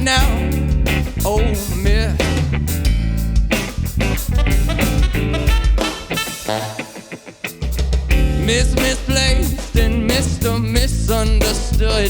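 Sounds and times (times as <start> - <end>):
drum kit hits: 0.0 - 6.8, 7.5 - 12.0
bass guitar: 0.0 - 12.0
guitar: 0.0 - 12.0
live band playing: 0.0 - 12.0.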